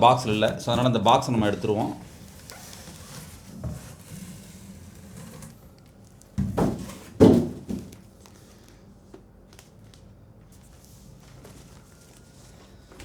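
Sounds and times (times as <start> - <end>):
dull thumps of box set down: 6.4 - 8.0.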